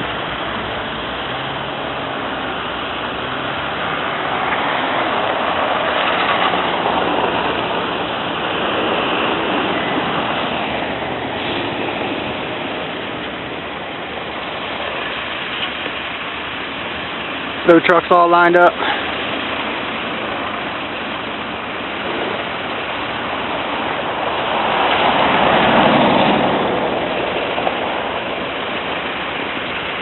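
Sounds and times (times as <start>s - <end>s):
rushing hiss of snowplow: 0.0s - 30.0s
truck engine noise: 0.0s - 30.0s.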